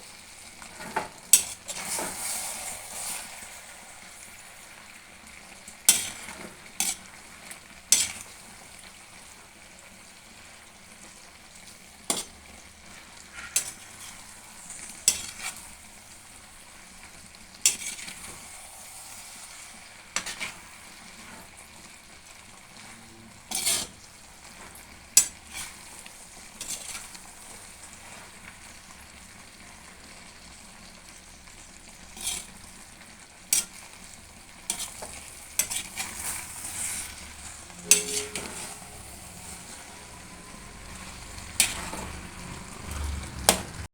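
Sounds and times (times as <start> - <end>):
curry sizzling in a pan: 0.0 - 43.9
spatula scraping a pan: 0.6 - 8.8, 11.8 - 16.4, 17.2 - 21.6, 22.8 - 28.3, 32.0 - 43.9.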